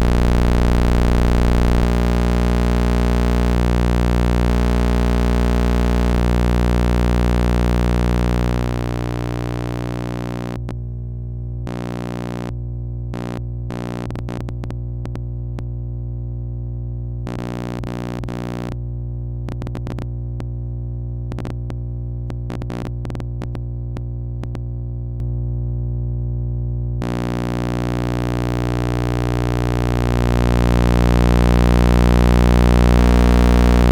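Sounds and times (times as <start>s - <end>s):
buzzing oscillator tone: 0.0s - 10.6s, 11.7s - 14.7s, 17.2s - 18.8s, 27.0s - 33.9s
crackling irregular clicks: 13.2s - 15.7s, 19.4s - 20.5s, 21.3s - 25.3s.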